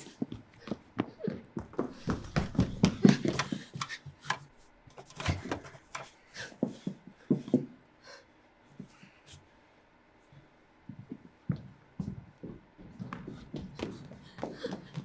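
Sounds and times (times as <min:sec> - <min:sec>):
knocks and thumps: 0:03.2 - 0:06.1.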